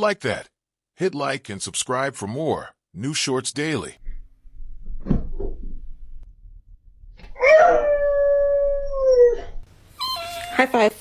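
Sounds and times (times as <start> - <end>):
dog howling: 7.4 - 10.6.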